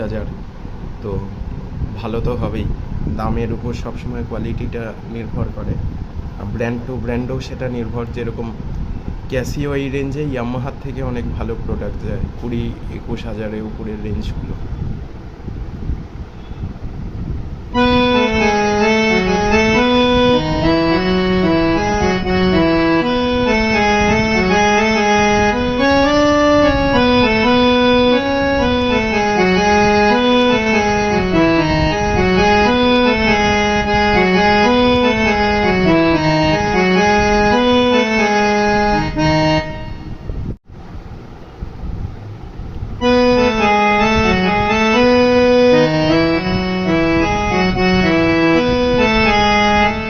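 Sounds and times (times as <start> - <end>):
electronic keyboard melody: 17.7 - 40.5, 43.0 - 50.0.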